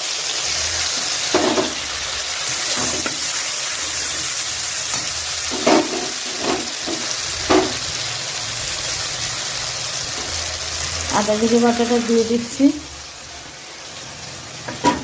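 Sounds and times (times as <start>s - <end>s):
food sizzling in hot oil: 0.0s - 15.0s
stirring scrapes against pan: 5.5s - 7.0s.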